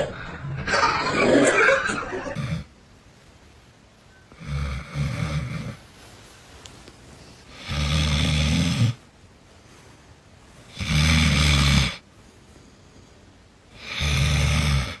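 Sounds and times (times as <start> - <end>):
loud snoring: 2.4 - 2.7, 4.3 - 5.8, 7.5 - 9.0, 10.7 - 12.0, 13.8 - 15.0.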